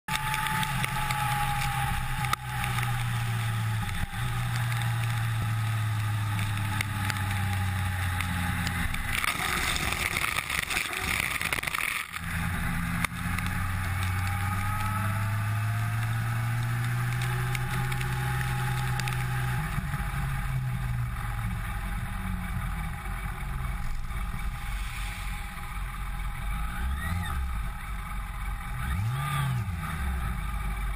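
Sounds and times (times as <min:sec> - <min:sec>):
low rumble: 0:00.1 - 0:30.9
vehicle engines humming: 0:00.1 - 0:30.9
heavy rain: 0:09.0 - 0:16.0.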